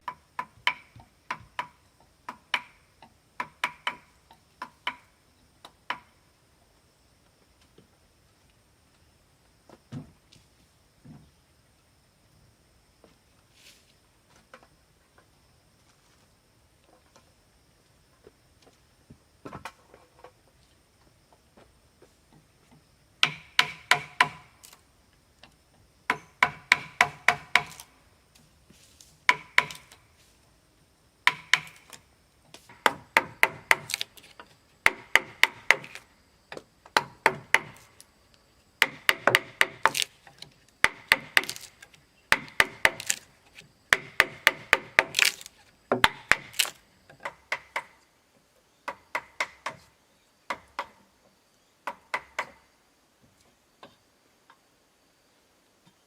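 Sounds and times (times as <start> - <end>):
hand tool striking wood: 0.0 - 2.8, 3.4 - 5.1, 23.2 - 24.8, 26.1 - 27.9, 29.2 - 30.0, 31.2 - 38.0, 38.8 - 48.0, 48.9 - 49.9, 50.5 - 51.0, 51.8 - 52.6.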